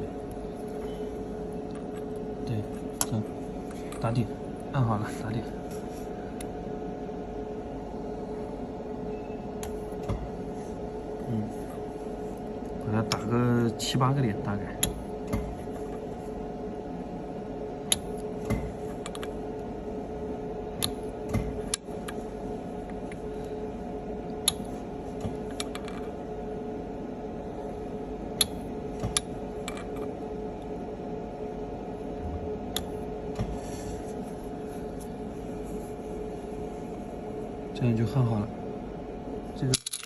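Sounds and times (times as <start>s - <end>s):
welding machine humming: 7.5s - 37.8s.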